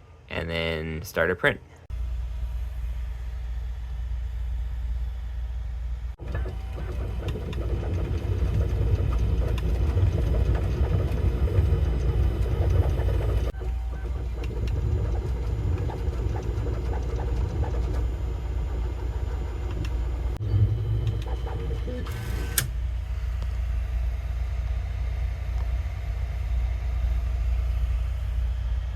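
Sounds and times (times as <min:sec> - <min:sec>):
three d printer rumbling: 0:06.2 - 0:22.8.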